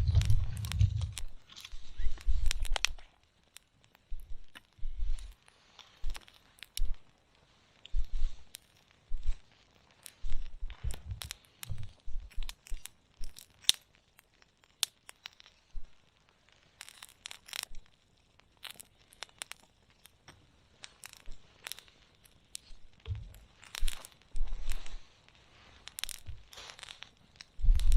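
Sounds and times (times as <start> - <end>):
dull low thumps: 0.0 - 1.4, 10.6 - 12.3
campfire crackling: 0.0 - 27.9
sharp snaps and pops: 0.0 - 27.9.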